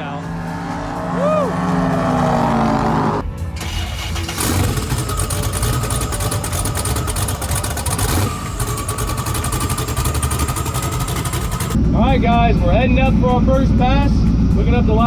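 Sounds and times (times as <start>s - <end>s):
engine idling with choppy pulse: 0.0s - 12.0s.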